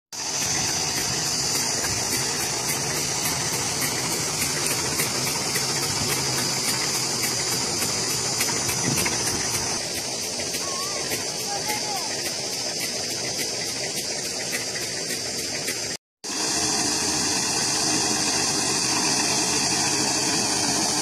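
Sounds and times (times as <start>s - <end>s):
diesel engine running: 0.1s - 21.0s.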